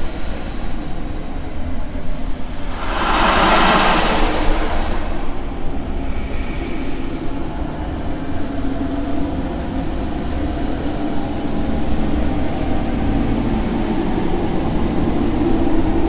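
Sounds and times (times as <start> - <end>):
hissing whoosh: 2.5 - 6.0
low rumbling drone: 2.5 - 6.1.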